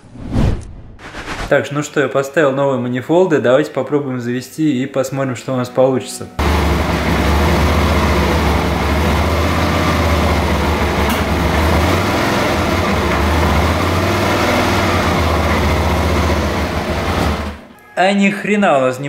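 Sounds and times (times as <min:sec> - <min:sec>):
motorcycle engine running: 0:06.4 - 0:17.6.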